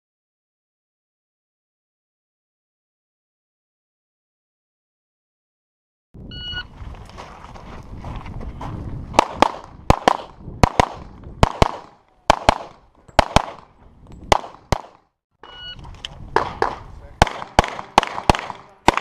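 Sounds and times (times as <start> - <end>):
pistol shots: 9.2 - 15.1, 16.4 - 19.0.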